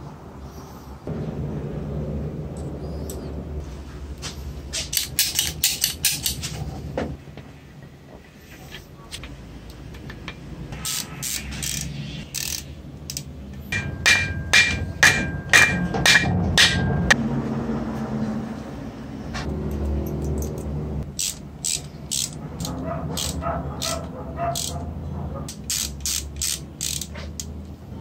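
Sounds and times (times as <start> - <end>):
low steady hum: 1.0 - 4.8
sharp knocks with ringing tone: 13.8 - 17.2.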